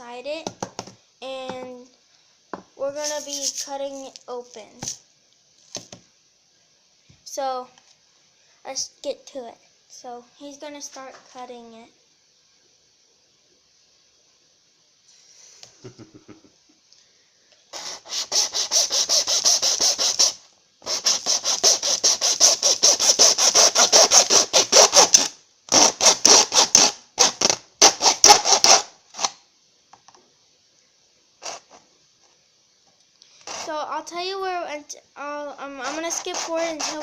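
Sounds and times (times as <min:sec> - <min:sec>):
blade sawing rasping strokes: 0:17.7 - 0:26.9, 0:33.4 - 0:33.8, 0:35.8 - 0:37.0.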